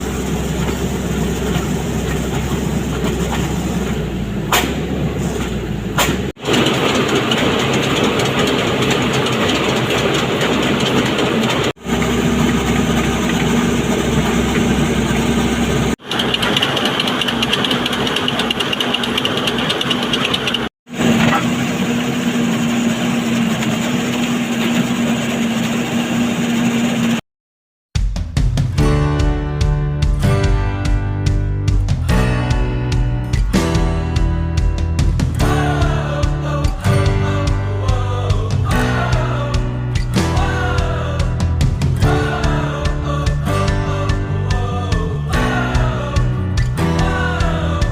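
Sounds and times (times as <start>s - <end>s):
drilling rig engine: 0.0s - 27.2s, 35.2s - 47.9s
sharp clicks: 16.0s - 20.7s.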